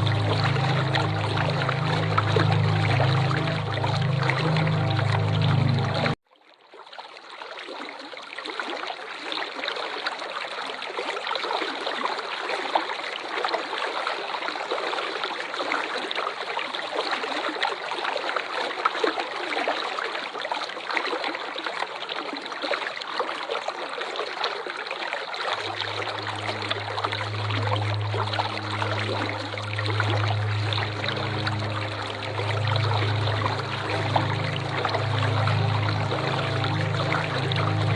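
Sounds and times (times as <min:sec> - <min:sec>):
low hum: 0:00.0 - 0:06.2, 0:25.6 - 0:37.9
waterfall rushing: 0:00.0 - 0:06.2, 0:25.6 - 0:37.9.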